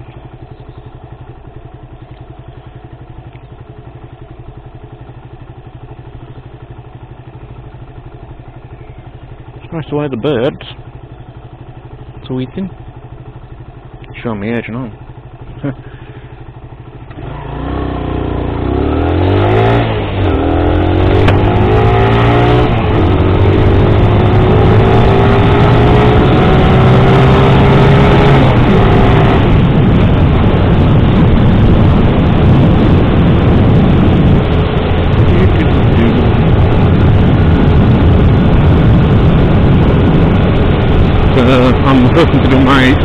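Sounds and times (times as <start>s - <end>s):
motorcycle engine accelerating: 0.0s - 43.0s
wind noise on microphone: 19.1s - 43.0s.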